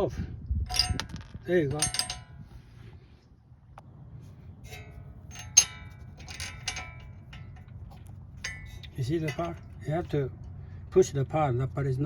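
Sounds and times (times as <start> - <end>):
steel tools clinking: 0.7 - 2.4, 4.7 - 10.2.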